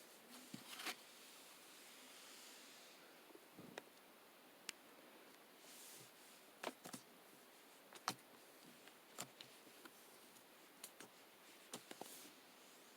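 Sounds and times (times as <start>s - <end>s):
small irregular clicks and taps: 7.9s - 12.1s.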